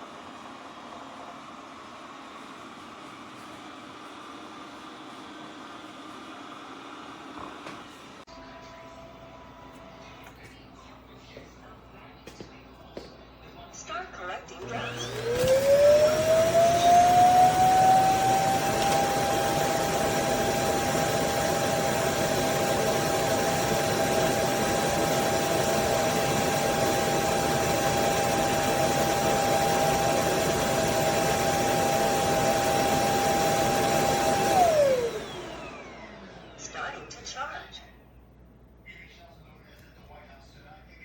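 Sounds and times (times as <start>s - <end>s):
robot vacuum fan motor whine: 14.6s - 36.6s.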